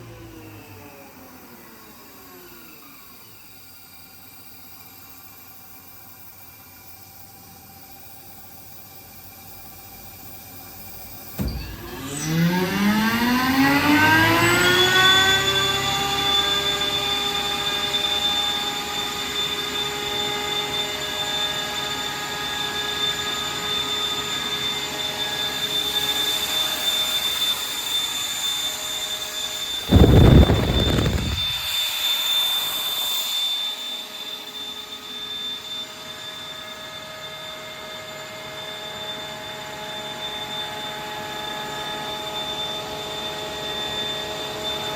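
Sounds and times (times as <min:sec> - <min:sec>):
air compressor motor whine: 0:00.0 - 0:44.9
loud low rumble: 0:29.8 - 0:31.8
high hiss of air: 0:29.8 - 0:31.9.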